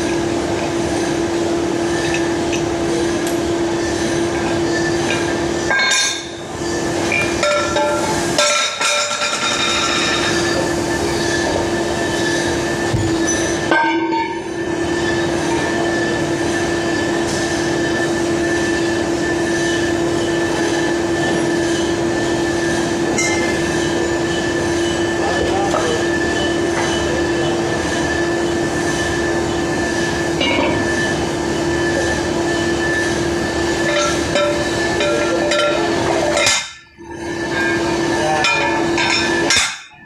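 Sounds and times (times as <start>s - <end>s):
machine tool grinding metal: 3.8s - 13.7s, 14.3s - 39.9s.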